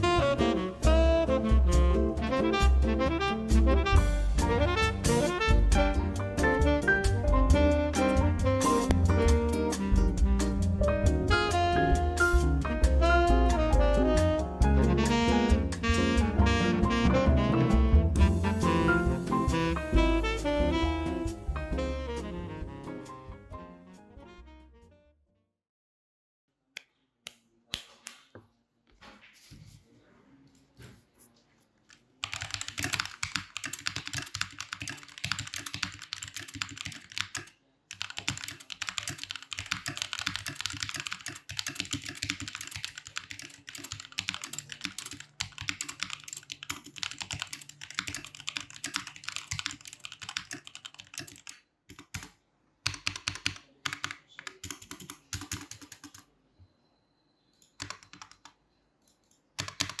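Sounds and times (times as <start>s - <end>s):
mechanical keyboard typing: 31.9s - 56.3s, 57.6s - 58.6s, 59.6s - 60.0s.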